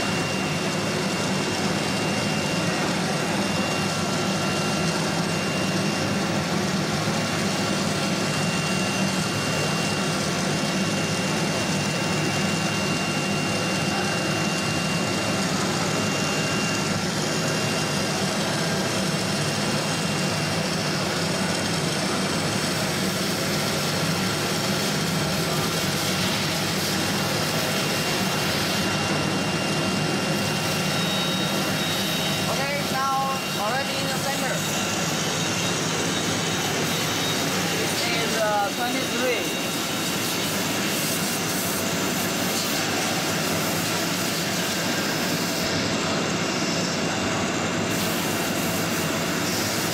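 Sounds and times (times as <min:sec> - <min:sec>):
machinery running: 0:00.0 - 0:49.9
thin high whine: 0:23.6 - 0:49.9.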